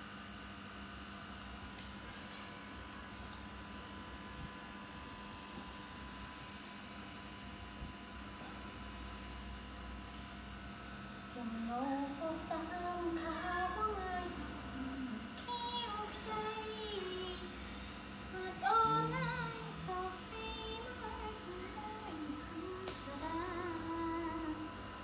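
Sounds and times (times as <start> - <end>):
person singing wavering melody: 11.3 - 17.6, 18.3 - 24.8.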